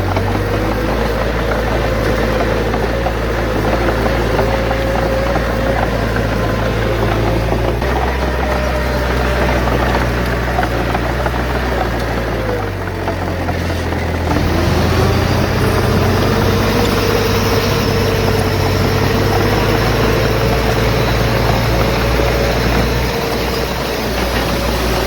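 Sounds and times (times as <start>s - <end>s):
heavy diesel engine running: 0.0s - 25.0s.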